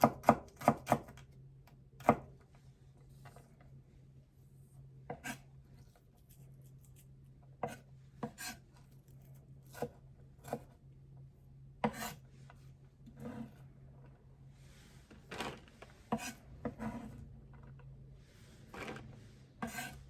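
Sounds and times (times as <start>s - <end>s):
knife cutting celery on board: 0.0s - 1.2s, 5.1s - 5.5s, 7.6s - 8.6s, 9.6s - 10.8s, 11.8s - 12.2s, 16.1s - 17.2s, 19.6s - 20.0s.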